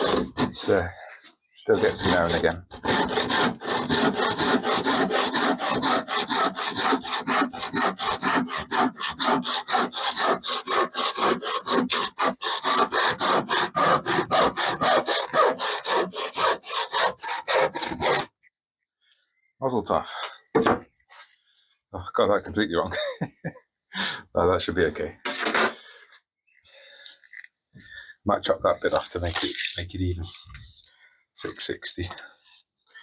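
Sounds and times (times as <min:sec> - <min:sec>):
handsaw cutting timber: 0:00.0 - 0:00.9, 0:01.7 - 0:18.3.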